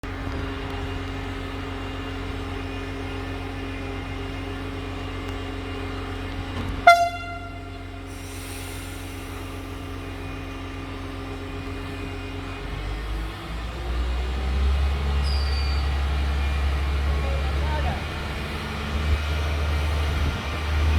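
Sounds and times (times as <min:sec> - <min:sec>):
diesel train humming: 0:00.0 - 0:20.9
loud train horn blast: 0:06.8 - 0:08.3.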